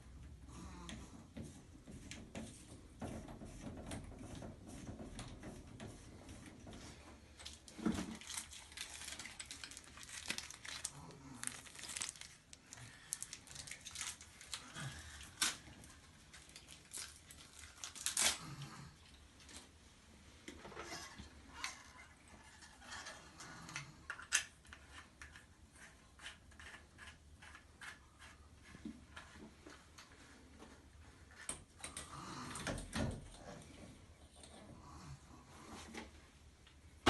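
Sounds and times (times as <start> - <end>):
packaging crinkling and tearing: 7.4 - 18.8.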